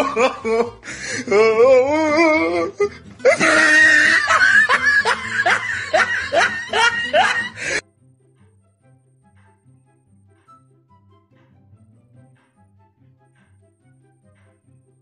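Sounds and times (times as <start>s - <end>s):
person laughing hard: 0.0s - 7.8s.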